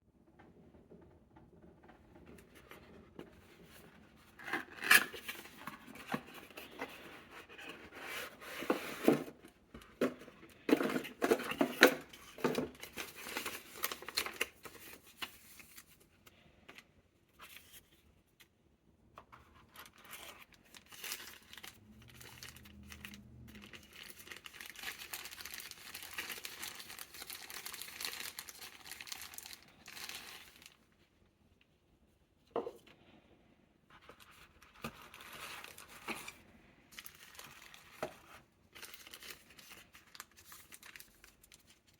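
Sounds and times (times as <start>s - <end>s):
packaging rustling: 2.4s - 16.1s, 19.3s - 30.8s, 34.0s - 41.9s
wrapping tearing and crinkling: 10.6s - 16.0s, 19.4s - 30.8s, 34.1s - 41.9s.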